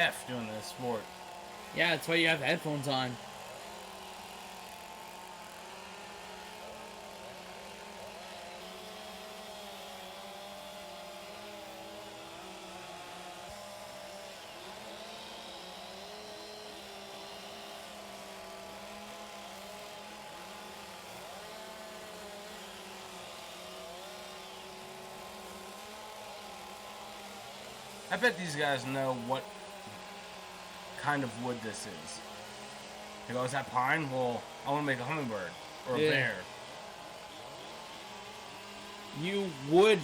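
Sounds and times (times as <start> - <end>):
chainsaws carving wood: 0.0 - 40.0.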